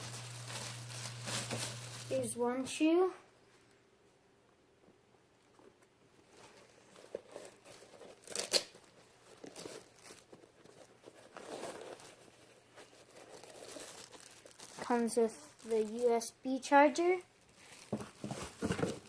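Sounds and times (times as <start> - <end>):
packaging rustling and tearing: 0.0 - 2.4, 6.3 - 16.3, 17.5 - 19.0.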